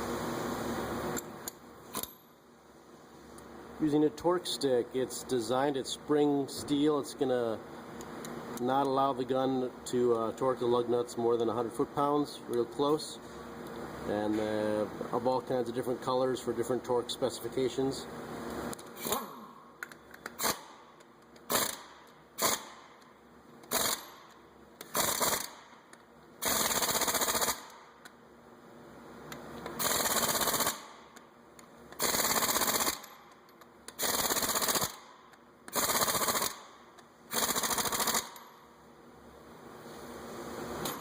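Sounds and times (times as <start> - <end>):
impact gun rattling bursts: 21.4 - 23.0, 23.7 - 24.3, 24.9 - 25.8, 26.4 - 27.9, 29.8 - 31.1, 32.0 - 33.3, 34.0 - 38.6.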